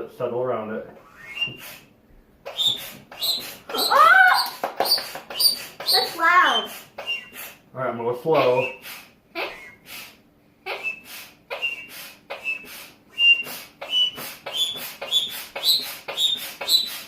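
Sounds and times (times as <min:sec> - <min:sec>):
thin rising whistle: 0:01.0 - 0:01.8, 0:05.4 - 0:07.4, 0:10.8 - 0:17.0
air puffs hissing into slime bubble: 0:01.1 - 0:07.7.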